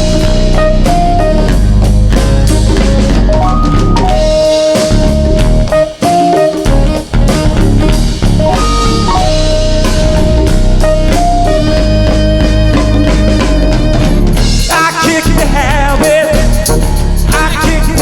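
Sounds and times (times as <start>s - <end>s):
bass: 0.0s - 18.0s
drum kit: 0.0s - 18.0s
electric guitar lines: 0.0s - 18.0s.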